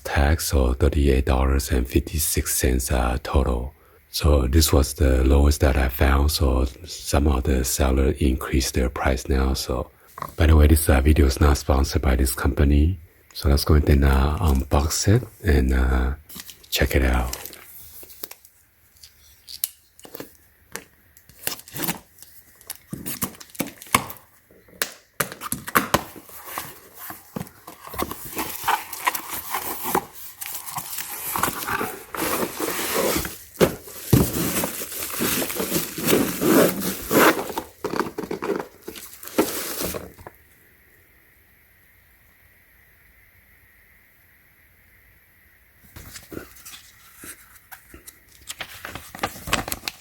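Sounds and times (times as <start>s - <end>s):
packaging clicks and rustles: 16.3s - 40.4s, 46.1s - 50.0s
packaging crinkling and tearing: 16.3s - 40.4s, 46.1s - 50.0s.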